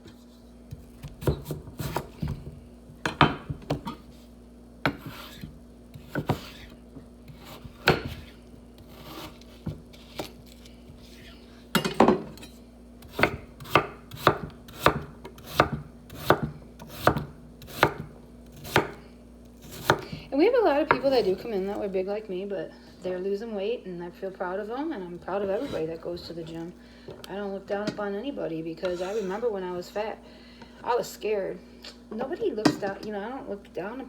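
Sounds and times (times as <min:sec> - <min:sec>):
faint steady hum: 0:00.0 - 0:34.0
knife chopping on cutting board: 0:00.7 - 0:04.0, 0:04.8 - 0:19.0, 0:19.6 - 0:20.3, 0:20.9 - 0:21.3.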